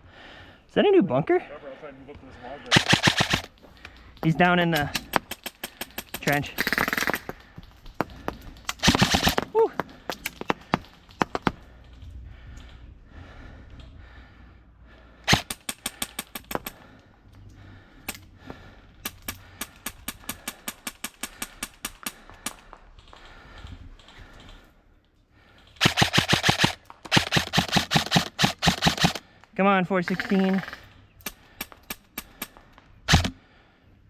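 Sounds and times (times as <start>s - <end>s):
airsoft rifle shots clicking: 2.7s - 7.5s, 8.6s - 9.4s, 15.3s - 16.8s, 19.0s - 23.3s, 25.7s - 29.2s, 30.6s - 33.4s.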